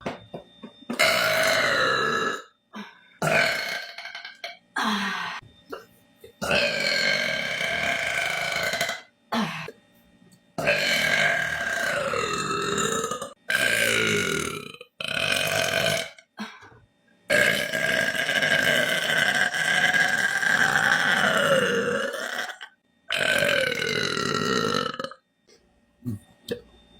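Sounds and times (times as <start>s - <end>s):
person burping: 0.9s - 2.5s, 3.2s - 9.7s, 10.6s - 16.2s, 17.3s - 25.2s.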